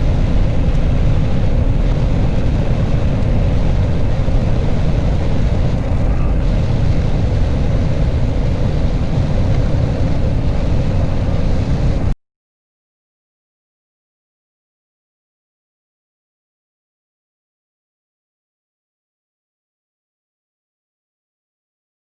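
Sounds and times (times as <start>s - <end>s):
combine harvester running: 0.0s - 12.2s.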